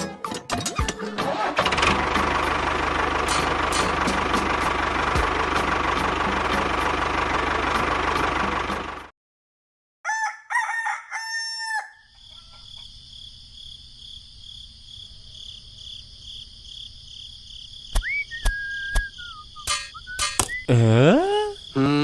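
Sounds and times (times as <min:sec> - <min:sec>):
rooster crowing: 0:10.0 - 0:12.7.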